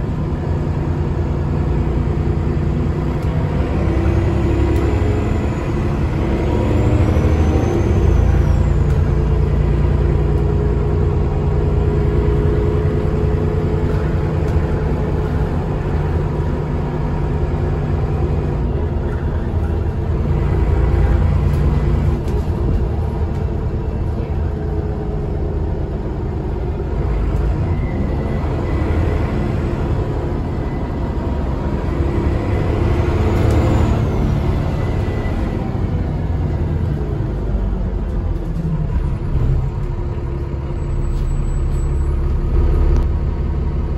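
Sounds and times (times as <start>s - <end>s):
bus engine drone: 0.0s - 43.9s
road rumble: 0.0s - 43.9s.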